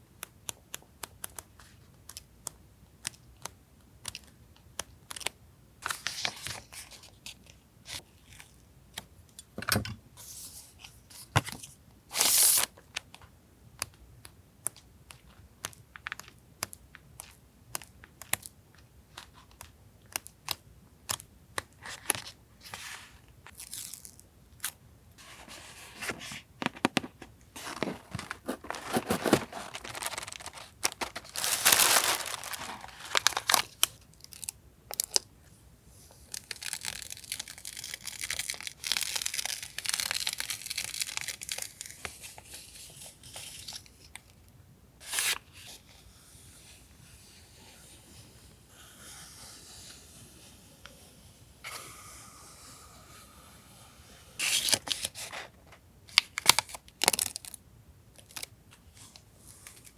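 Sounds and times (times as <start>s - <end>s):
packaging crinkling and tearing: 26.6s - 35.2s, 36.3s - 42.2s, 56.1s - 57.6s.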